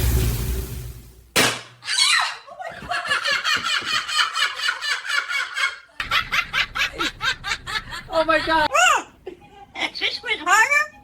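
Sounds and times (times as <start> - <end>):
high-pitched rapid laughter: 1.8 - 8.6.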